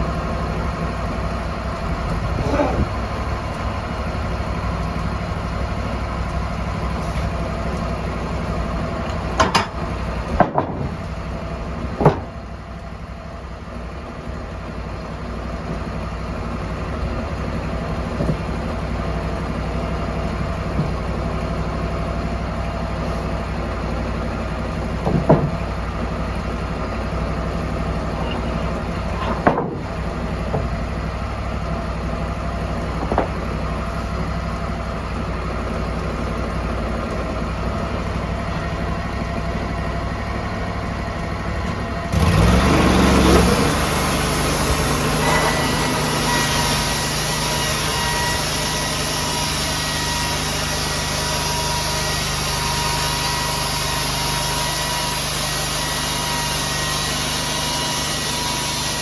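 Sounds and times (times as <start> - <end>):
engine idling: 0.0 - 59.0
sharp knocks or clanks: 9.1 - 11.1, 12.0 - 12.4, 25.0 - 25.7, 29.2 - 30.8.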